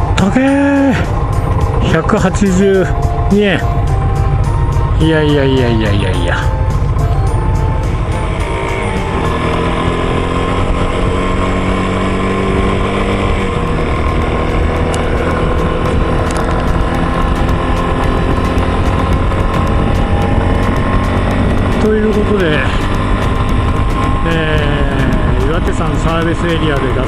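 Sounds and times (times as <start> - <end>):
wind rumble: 6.2 - 27.0
motorcycle engine pulling: 9.2 - 27.0.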